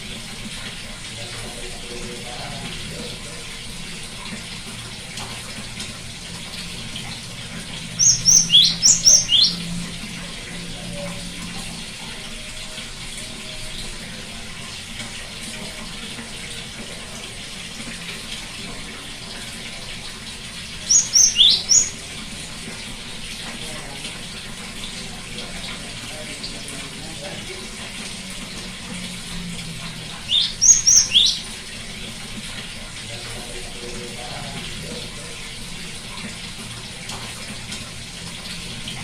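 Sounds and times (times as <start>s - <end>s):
great tit calling: 8.0s - 9.7s, 20.8s - 22.0s, 30.2s - 31.5s.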